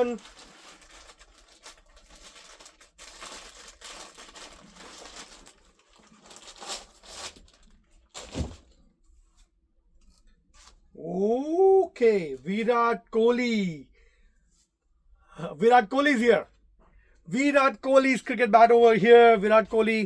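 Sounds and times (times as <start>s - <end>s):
packaging rustling and crinkling: 0.0s - 8.8s.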